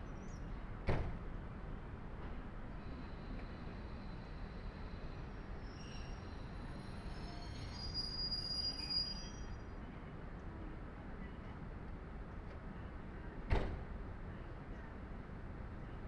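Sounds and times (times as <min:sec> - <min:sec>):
train rumbling: 0:00.4 - 0:08.6.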